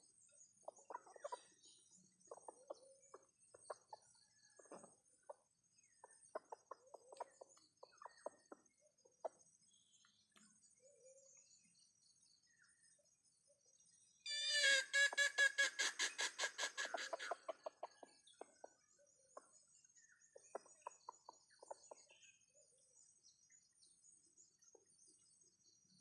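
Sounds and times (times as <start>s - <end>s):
chicken clucking: 14.6s - 18.5s.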